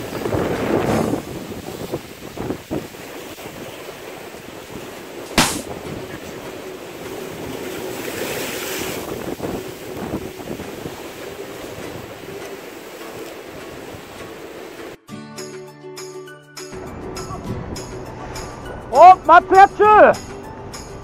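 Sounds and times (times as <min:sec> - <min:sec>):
wind on microphone: 0:00.0 - 0:06.6, 0:08.5 - 0:12.4
waves washing against rocks: 0:00.0 - 0:15.0
sharp click: 0:05.4 - 0:05.7.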